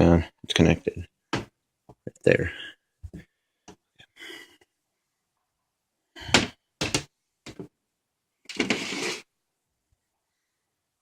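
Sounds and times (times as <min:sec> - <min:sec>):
computer case scraping: 0:08.5 - 0:09.3.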